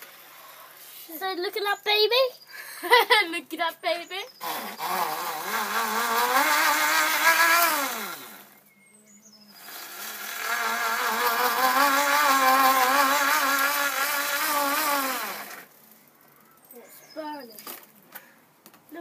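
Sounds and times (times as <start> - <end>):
electric power tool motor: 4.4 - 8.6, 9.6 - 15.7.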